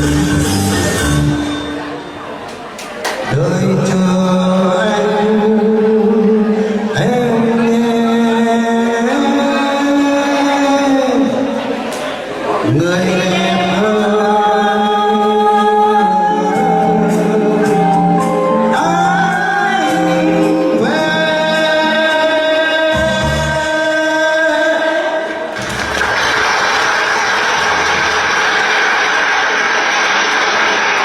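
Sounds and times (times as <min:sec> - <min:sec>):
person singing with accompaniment: 0:12.7 - 0:25.4.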